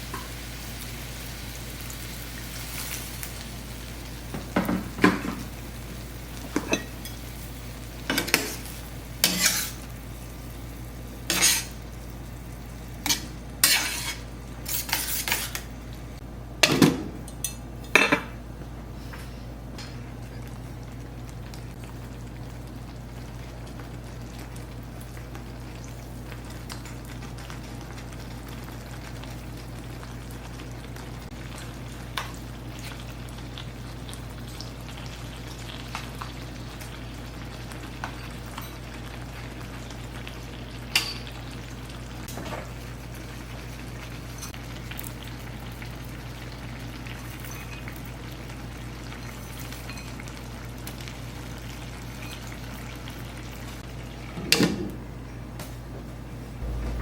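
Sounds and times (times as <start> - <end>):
food sizzling and simmering: 0.0 - 16.4, 17.2 - 57.0
low hum: 56.4 - 57.0.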